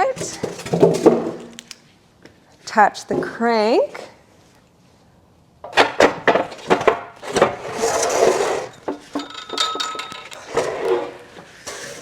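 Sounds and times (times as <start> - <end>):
metal scraping rub: 7.6 - 8.8.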